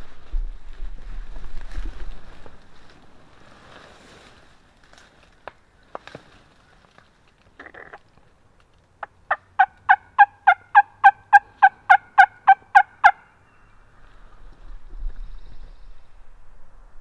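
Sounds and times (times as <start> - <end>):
turkey yelps: 9.3 - 13.2.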